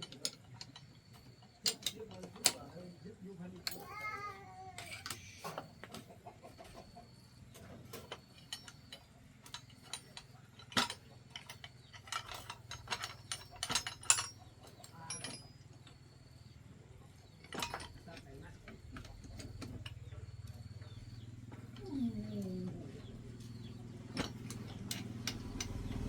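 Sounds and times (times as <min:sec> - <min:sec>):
tools and metal parts clicking: 0:00.0 - 0:26.0
faint low hum: 0:11.3 - 0:26.0.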